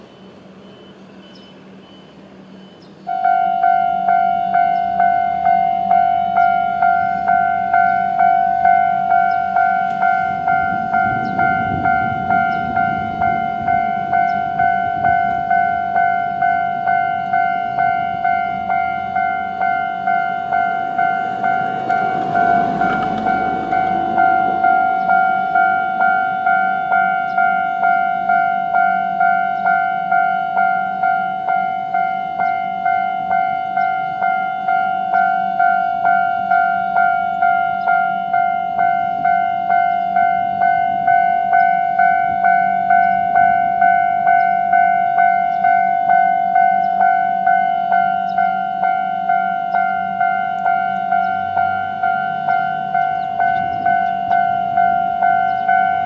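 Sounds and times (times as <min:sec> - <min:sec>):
level crossing alarm two-tone ding: 0:00.0 - 0:56.0
train wheels rushing: 0:06.7 - 0:26.7.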